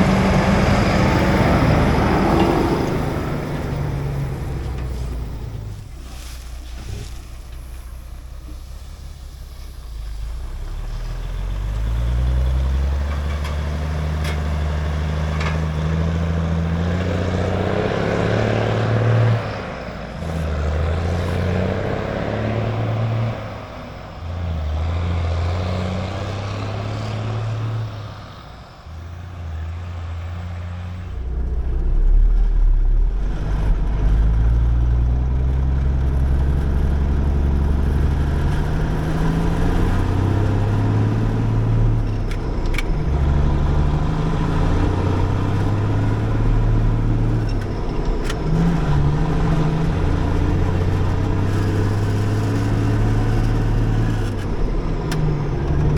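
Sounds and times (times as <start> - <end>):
diesel truck engine shifting gears: 0.0 - 55.9.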